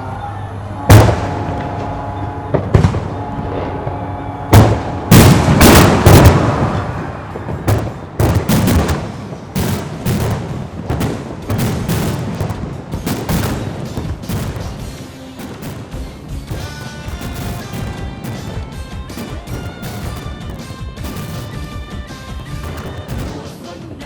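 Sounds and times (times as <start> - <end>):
fireworks bangs and crackling: 0.9 - 24.0.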